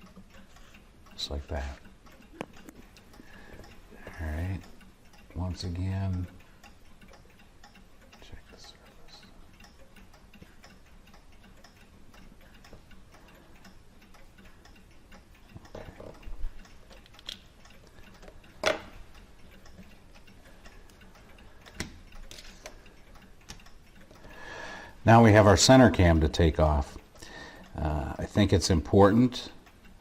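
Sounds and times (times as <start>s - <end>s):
clock ticking: 0.0s - 30.0s
metal parts and tools clicking: 16.9s - 19.0s, 21.6s - 22.8s.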